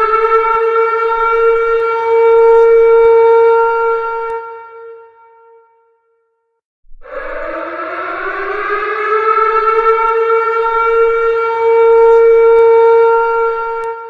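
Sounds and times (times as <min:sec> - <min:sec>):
civil defense siren wailing: 0:00.0 - 0:05.9, 0:07.0 - 0:14.0.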